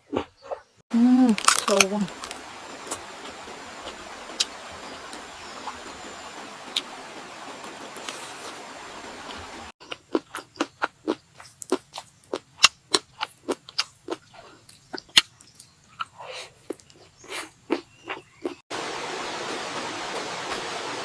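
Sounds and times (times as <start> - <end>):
steady hiss: 1.2 - 9.7, 18.8 - 21.0
crunchy chewing and biting: 1.4 - 4.6, 9.8 - 18.6.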